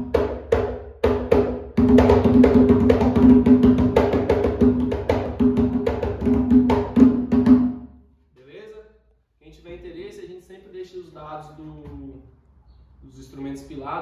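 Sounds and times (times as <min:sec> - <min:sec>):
hand drum fast rhythm: 0:00.0 - 0:07.7.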